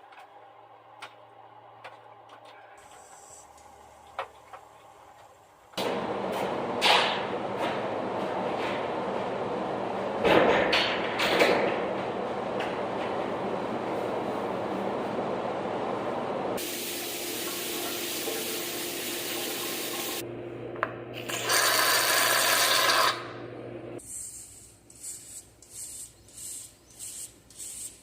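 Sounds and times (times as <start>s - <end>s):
water spraying and splashing: 16.6s - 20.2s.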